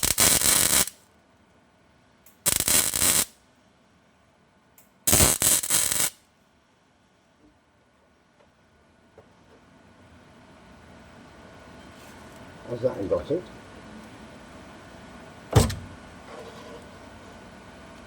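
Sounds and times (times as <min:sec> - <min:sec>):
welder arc crackle: 0:00.0 - 0:01.0, 0:02.3 - 0:03.4, 0:05.1 - 0:06.2.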